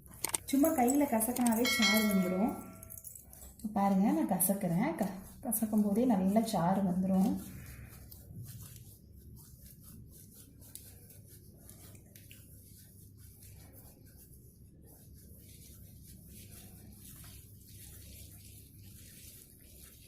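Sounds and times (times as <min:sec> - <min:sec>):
low steady hum: 0:00.5 - 0:20.0.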